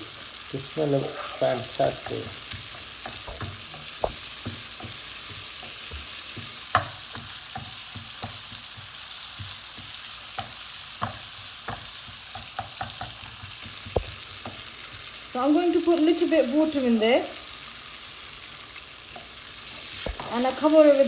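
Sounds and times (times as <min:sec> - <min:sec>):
spoon knocking and scraping pan: 0:00.0 - 0:14.8, 0:19.1 - 0:20.9
paste sizzling in hot oil: 0:00.0 - 0:21.0.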